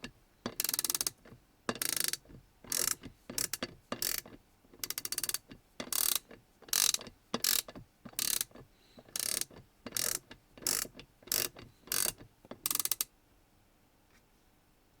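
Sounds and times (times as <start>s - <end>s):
ratchet handle clicking: 0.5s - 13.1s.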